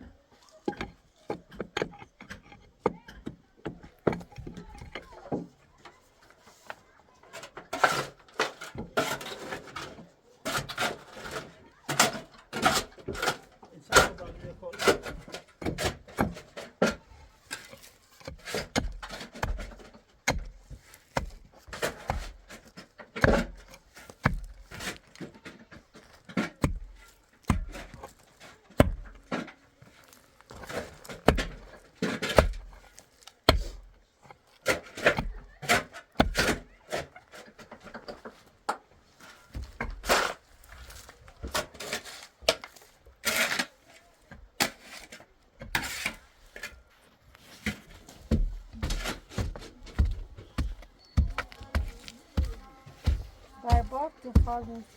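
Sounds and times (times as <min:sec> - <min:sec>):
knocks and thuds: 0:48.2 - 0:54.9.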